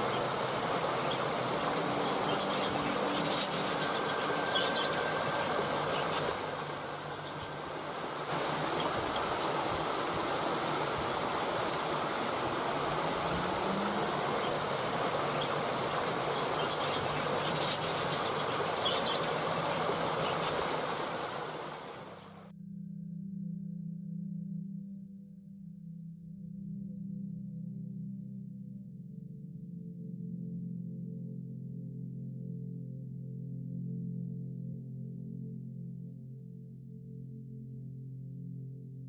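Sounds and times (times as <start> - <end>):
waterfall rushing: 0.0 - 22.4.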